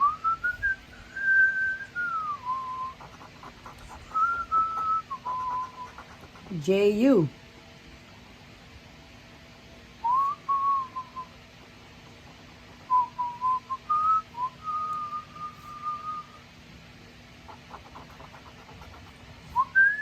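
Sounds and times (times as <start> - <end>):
whistled tune: 0.0 - 3.0, 4.0 - 5.9, 10.0 - 11.4, 12.9 - 16.4, 19.5 - 20.0.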